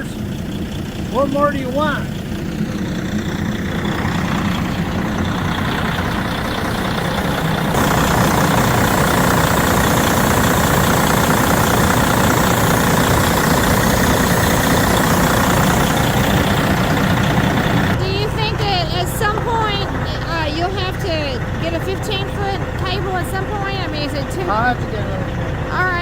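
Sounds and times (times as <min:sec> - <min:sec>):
diesel truck engine idling: 0:00.0 - 0:26.0.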